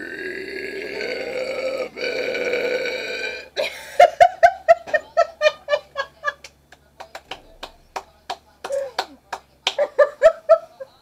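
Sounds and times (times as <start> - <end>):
woman belching: 0.0 - 3.6.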